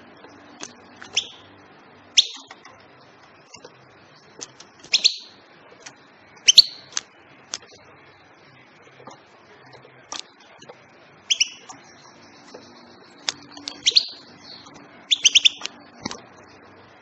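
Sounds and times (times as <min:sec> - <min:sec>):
goldfinch chirping: 0:00.5 - 0:01.5, 0:02.1 - 0:02.5, 0:04.2 - 0:05.4, 0:06.4 - 0:07.0, 0:11.2 - 0:15.8.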